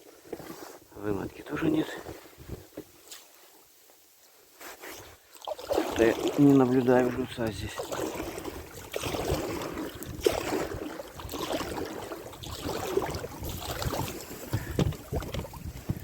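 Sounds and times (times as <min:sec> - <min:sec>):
water lapping around boat: 0:04.6 - 0:16.0
wind buffeting microphone: 0:08.2 - 0:16.0.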